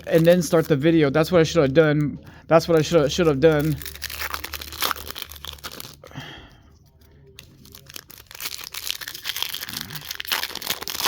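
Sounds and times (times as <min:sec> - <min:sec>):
wrappers tearing and crinkling: 0:00.0 - 0:01.0, 0:02.6 - 0:06.2, 0:07.4 - 0:11.0.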